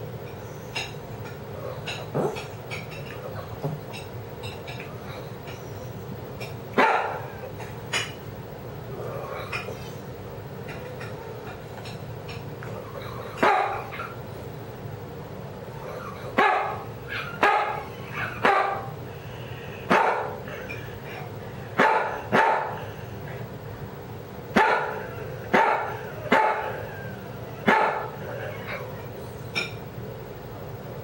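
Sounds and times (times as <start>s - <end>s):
dog barking with wheeze: 4.7s - 8.2s, 12.8s - 14.3s, 15.7s - 23.5s, 24.4s - 29.8s.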